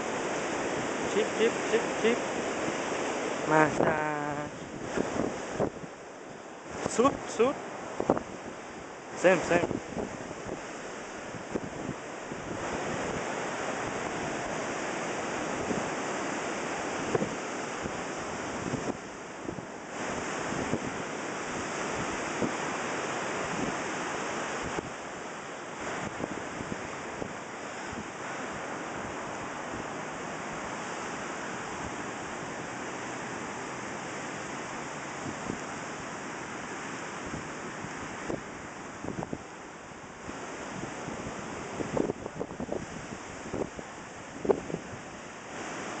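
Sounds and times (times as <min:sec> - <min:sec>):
surf washing: 0:00.0 - 0:46.0
wind buffeting microphone: 0:04.6 - 0:25.0, 0:25.8 - 0:32.9, 0:37.0 - 0:39.6, 0:40.2 - 0:46.0.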